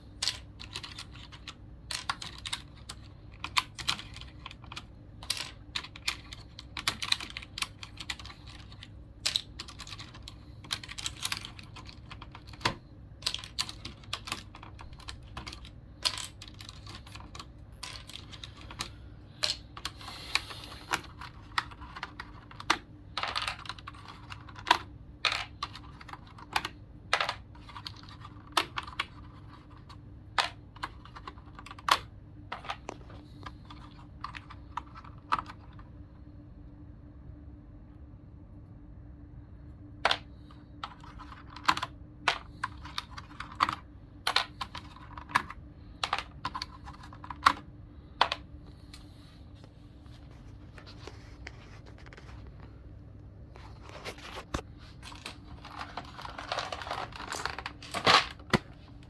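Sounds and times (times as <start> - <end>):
keyboard keys clicking: 0.2 - 26.8.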